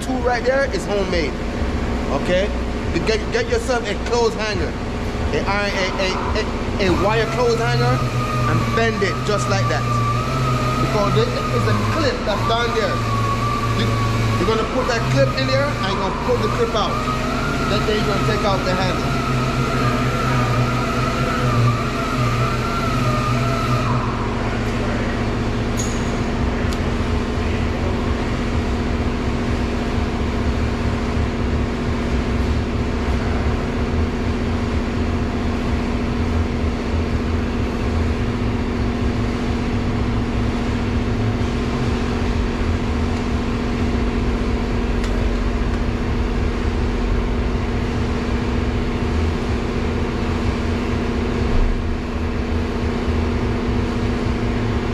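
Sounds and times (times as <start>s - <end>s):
vehicle hum and rumble: 0.0s - 54.9s
siren wailing: 4.6s - 25.6s.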